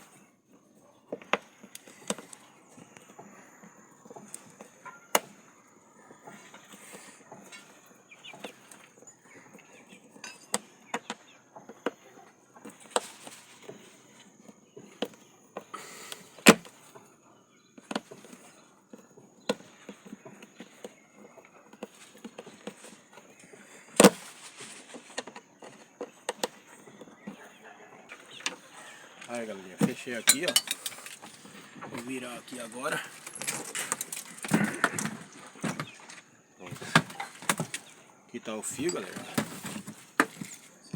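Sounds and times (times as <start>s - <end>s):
plastic parts clicking and knocking: 1.1s - 3.2s, 12.6s - 13.9s, 17.8s - 20.9s, 23.9s - 27.4s, 29.2s - 38.0s.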